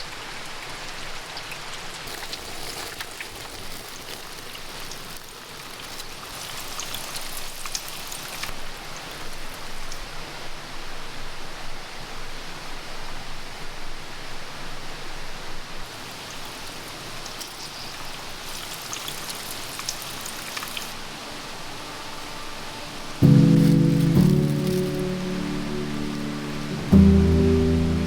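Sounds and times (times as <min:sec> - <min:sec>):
campfire crackling and popping: 0:02.1 - 0:08.5, 0:23.2 - 0:28.0
soft music: 0:21.0 - 0:28.0.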